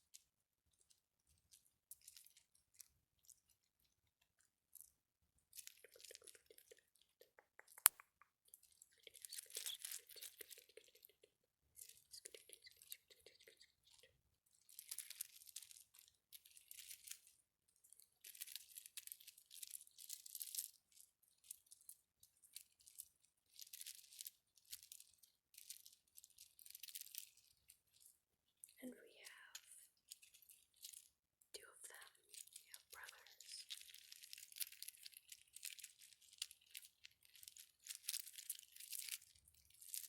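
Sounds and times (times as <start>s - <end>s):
crisp crackling and crunching: 0.8s - 40.0s
sharp click: 7.6s - 8.2s.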